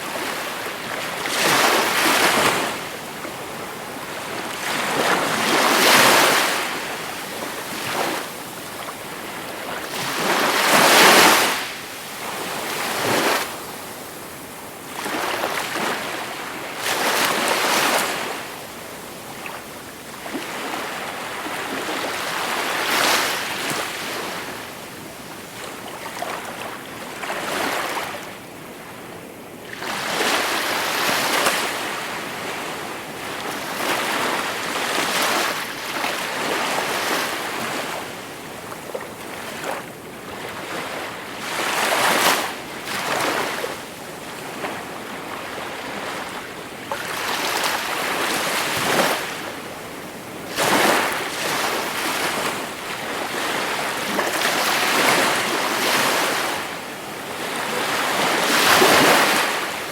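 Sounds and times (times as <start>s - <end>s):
sea waves breaking on shore: 0.0s - 28.3s, 29.7s - 59.9s.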